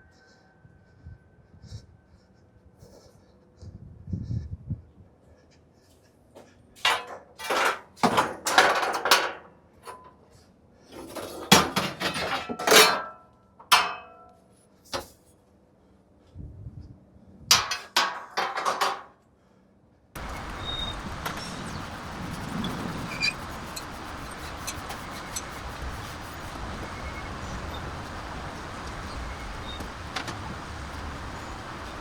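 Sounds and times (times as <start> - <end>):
hard objects knocking and clattering: 6.8 - 9.4, 17.6 - 19.1.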